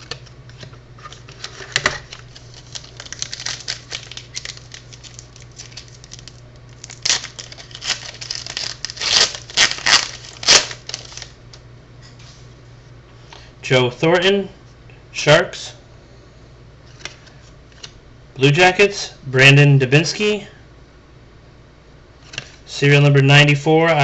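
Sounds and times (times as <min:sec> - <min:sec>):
cards rustling: 0:00.0 - 0:11.4.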